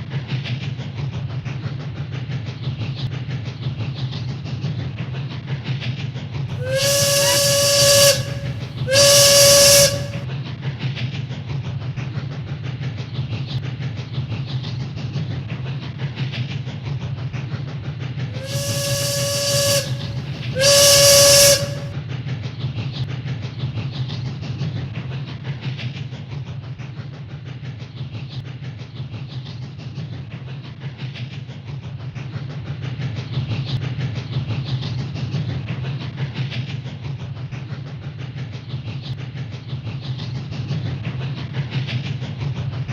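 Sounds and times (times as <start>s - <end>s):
steam whistle toots: 6.6s - 10.2s, 18.4s - 21.9s
train rumbling: 6.6s - 10.2s, 18.4s - 21.9s.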